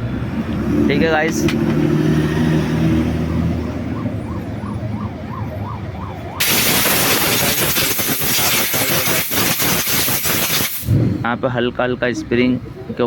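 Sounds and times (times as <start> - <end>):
wailing siren: 2.2 - 6.7
loud harsh spray hiss: 6.4 - 11.0.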